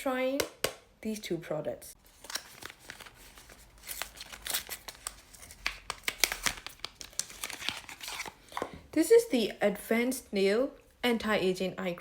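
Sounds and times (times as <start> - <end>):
packaging crinkling and rustling: 2.0 - 8.7.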